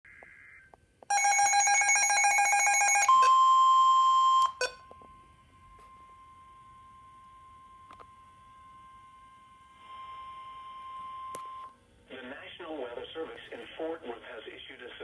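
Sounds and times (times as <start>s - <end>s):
pulsing electronic alarm beep: 0.1s - 7.1s
steady warning tone: 1.1s - 11.8s.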